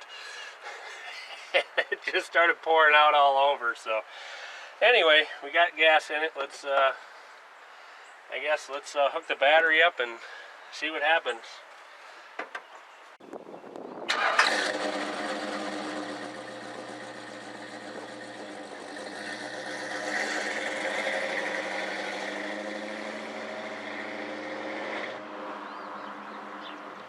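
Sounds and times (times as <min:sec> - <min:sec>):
car engine running: 0:14.5 - 0:25.1.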